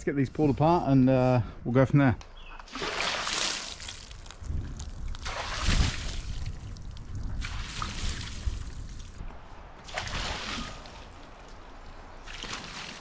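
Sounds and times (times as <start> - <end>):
water splashing onto wood: 2.7 - 9.2, 9.8 - 13.0
wind rumble on microphone: 4.0 - 12.2.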